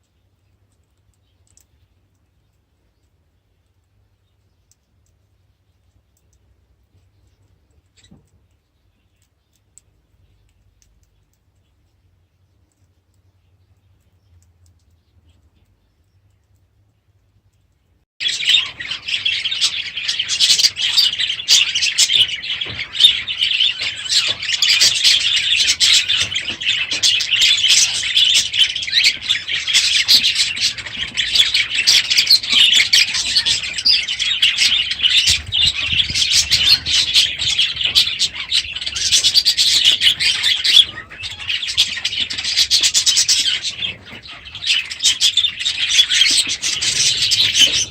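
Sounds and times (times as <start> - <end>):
budgerigars chattering and chirping: 18.2 - 47.9.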